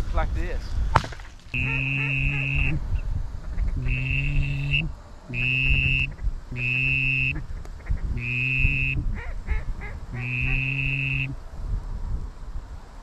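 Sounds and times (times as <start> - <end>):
wind rumble on microphone: 0.0 - 13.0
goose-like honking: 1.6 - 11.4.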